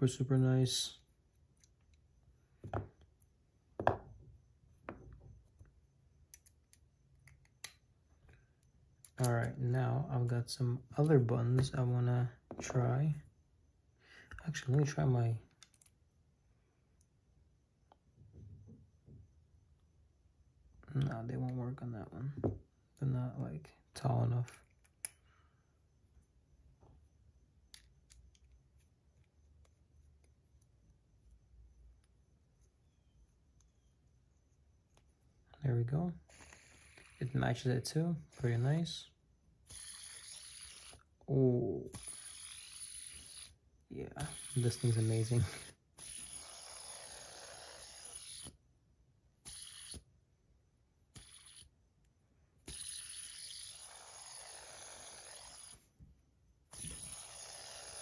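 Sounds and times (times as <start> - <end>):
faint small clicks: 15.5 - 16.0.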